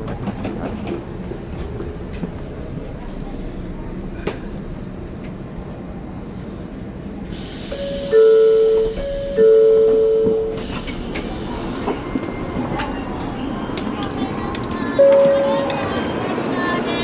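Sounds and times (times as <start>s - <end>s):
railway station rumble: 0.0s - 17.0s
two-note tone: 7.8s - 10.6s, 15.0s - 16.0s.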